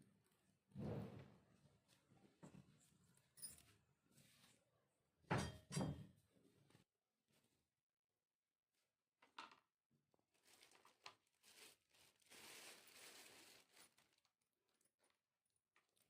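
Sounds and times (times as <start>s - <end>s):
soft rustling: 10.8s - 14.1s.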